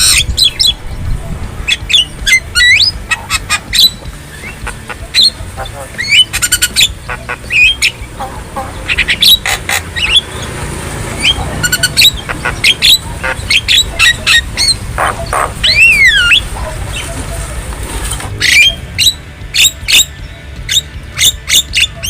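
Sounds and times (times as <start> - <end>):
bird chattering calls: 1.6 - 17.4, 18.3 - 22.0
bird slurred whistle: 6.0 - 8.0, 11.2 - 16.5.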